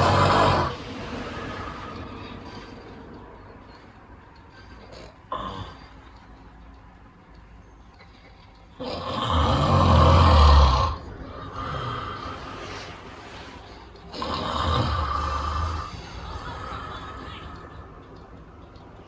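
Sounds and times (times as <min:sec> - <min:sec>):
person snoring loudly: 0:00.0 - 0:02.1, 0:04.9 - 0:05.9, 0:08.8 - 0:13.0, 0:14.1 - 0:17.8
quiet breath: 0:00.8 - 0:03.2, 0:11.0 - 0:14.2, 0:14.9 - 0:18.1.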